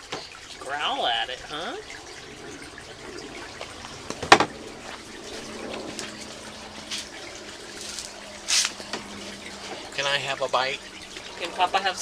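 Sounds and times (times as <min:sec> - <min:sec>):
low hum: 0:00.4 - 0:12.0.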